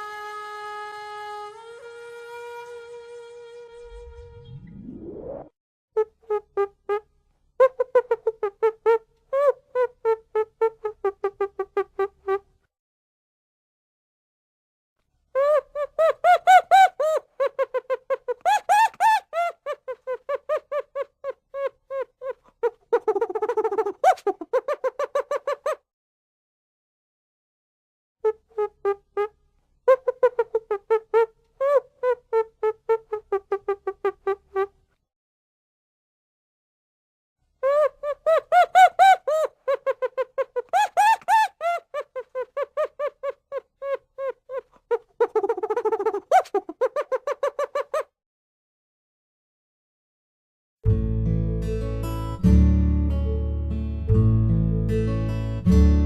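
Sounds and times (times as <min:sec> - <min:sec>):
chimpanzee hooting: 0:37.6 - 0:48.1.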